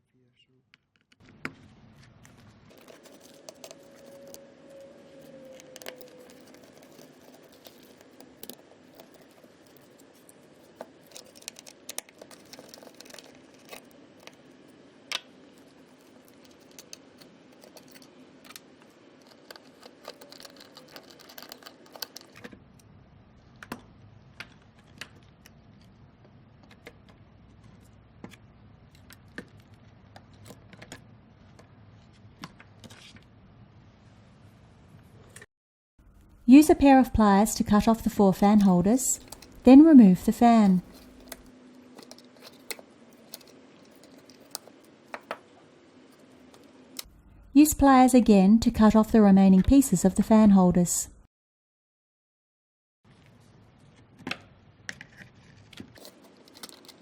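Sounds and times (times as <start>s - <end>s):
tools and parts clicking and rattling: 2.7s - 4.4s, 5.6s - 14.4s, 15.5s - 22.5s, 38.6s - 39.6s, 40.8s - 45.5s, 55.8s - 57.0s.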